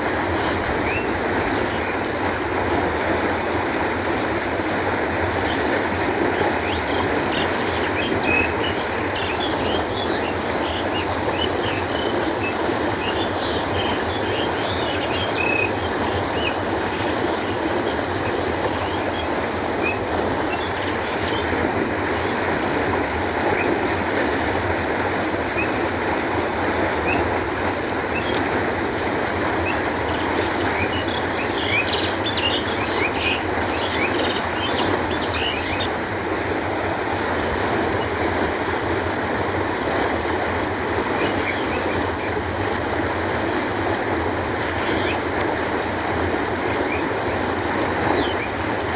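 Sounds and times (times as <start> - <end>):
water flowing: 0.0 - 48.9
birds chirping: 0.1 - 2.1, 6.3 - 23.9, 25.5 - 36.0, 44.7 - 45.3, 46.5 - 48.9.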